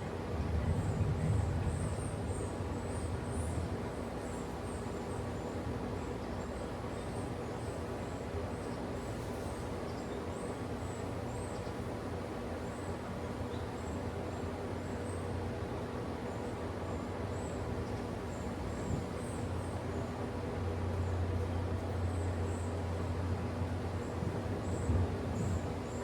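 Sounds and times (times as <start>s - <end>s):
wind rumble on microphone: 0.3s - 3.9s, 24.2s - 25.8s.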